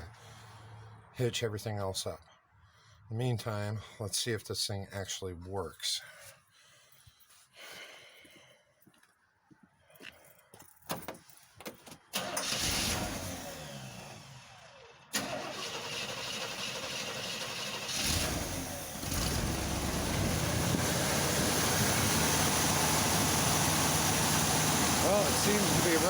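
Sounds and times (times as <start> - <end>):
truck engine starting and running: 11.8 - 26.0.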